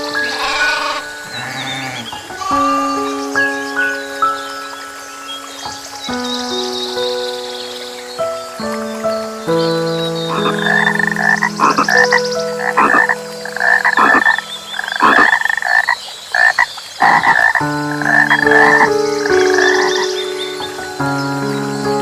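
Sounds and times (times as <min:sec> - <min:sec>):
frog croaking: 0:00.0 - 0:05.9, 0:10.3 - 0:21.5
soft music of held chords: 0:00.0 - 0:15.2, 0:17.6 - 0:22.0.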